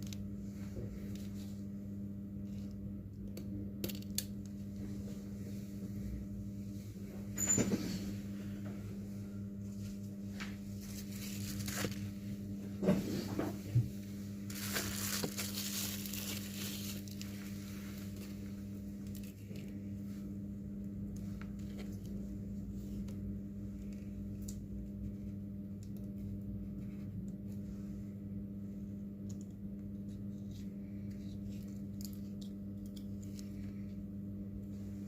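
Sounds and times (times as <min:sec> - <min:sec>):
low electrical hum: 0:00.0 - 0:35.0.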